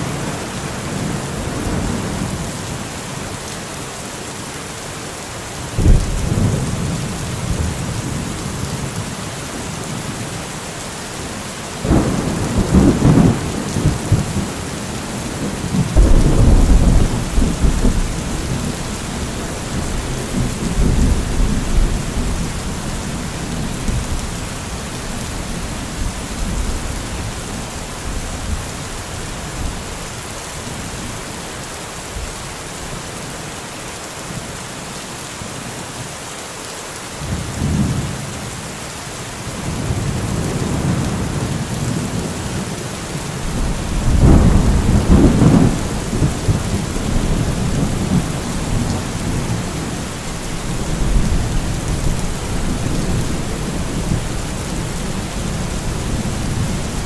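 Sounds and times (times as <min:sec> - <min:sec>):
steady rain falling: 0:00.0 - 0:57.0
thunder rolling: 0:15.7 - 0:22.4, 0:43.5 - 0:50.0.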